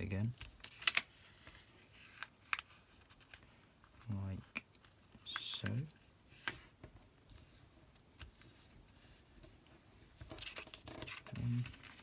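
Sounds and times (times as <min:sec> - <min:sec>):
paper crease clicks: 0:00.4 - 0:03.4
paper rustling: 0:00.4 - 0:04.1, 0:10.0 - 0:12.0.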